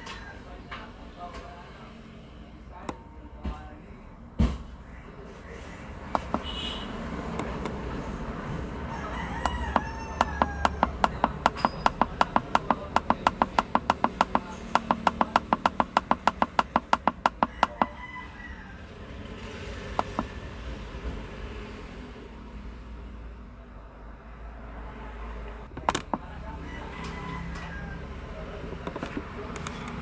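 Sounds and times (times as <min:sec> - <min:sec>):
sharp evenly spaced clicks: 0:06.2 - 0:06.6, 0:09.4 - 0:17.8
rooster crowing: 0:08.6 - 0:11.8, 0:17.3 - 0:19.2, 0:26.4 - 0:28.4.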